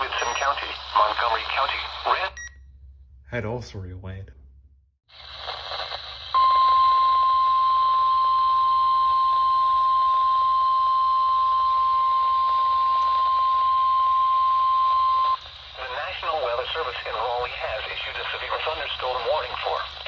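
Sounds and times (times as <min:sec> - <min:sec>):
radio static hiss: 0:00.0 - 0:02.5, 0:05.1 - 0:06.4, 0:15.3 - 0:20.0
steady alarm tone: 0:06.3 - 0:15.5.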